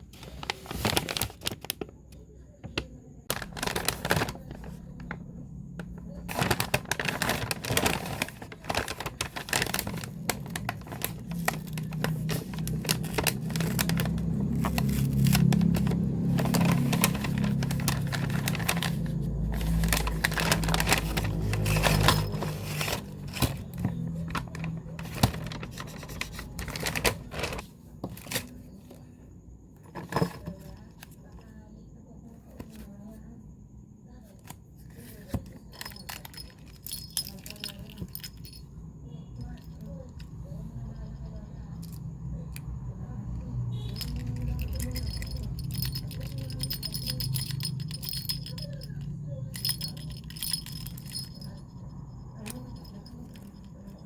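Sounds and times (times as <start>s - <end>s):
packaging being handled: 0.0s - 1.9s, 3.3s - 5.2s, 5.8s - 28.6s
rattling and clinking clicks: 6.3s - 28.5s, 43.9s - 51.6s.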